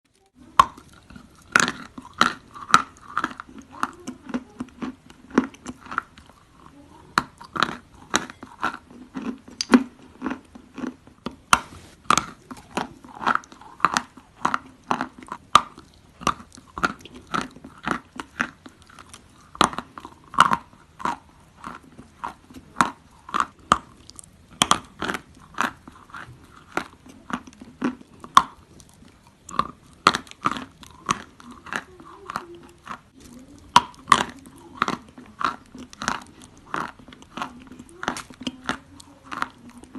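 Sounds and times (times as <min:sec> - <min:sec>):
chalk crunching between teeth: 0:11.5 - 0:12.4.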